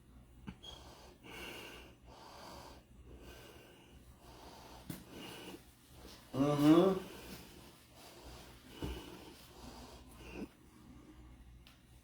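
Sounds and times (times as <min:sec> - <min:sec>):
soft breathing puffs: 0:00.5 - 0:12.0.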